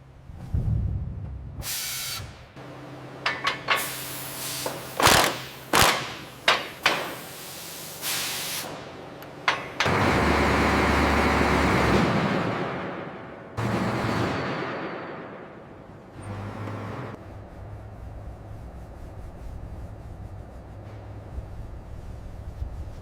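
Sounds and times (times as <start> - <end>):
loud rush with deep hum: 0.0 - 1.7
sharp knocks and clanks: 3.2 - 4.0, 4.6 - 7.3, 9.3 - 10.2
low steady hum: 17.0 - 23.0.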